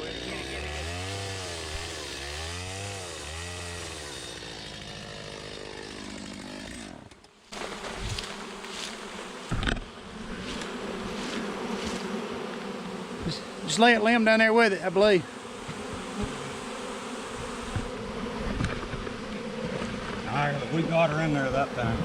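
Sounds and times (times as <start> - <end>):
honeybees buzzing: 0.0 - 6.8, 7.5 - 22.0
small engine running: 0.0 - 7.1.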